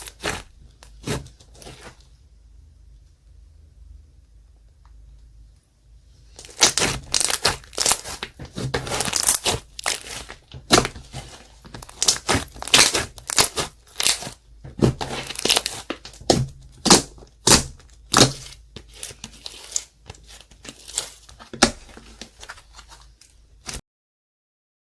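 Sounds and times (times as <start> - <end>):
slime popping and crackling: 6.3 - 22.7.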